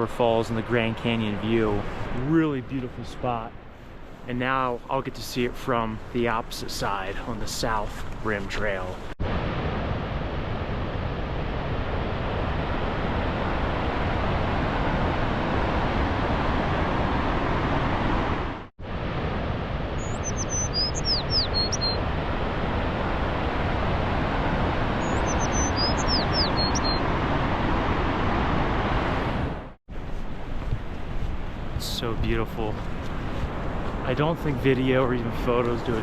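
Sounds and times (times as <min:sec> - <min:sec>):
small bird chirping: 0:20.0 - 0:22.0, 0:25.0 - 0:27.0.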